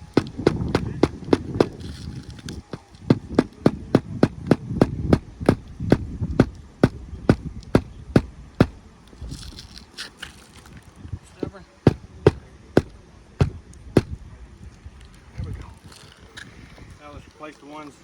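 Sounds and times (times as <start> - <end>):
hammer strikes on a roof: 0.0 - 1.9, 2.7 - 8.8, 11.9 - 14.2.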